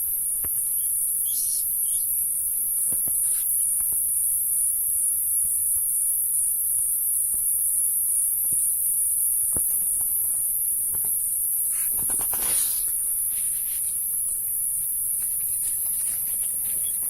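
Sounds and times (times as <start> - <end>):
insects chorus: 0.0 - 17.0
short rustle: 11.7 - 14.2, 15.1 - 17.0.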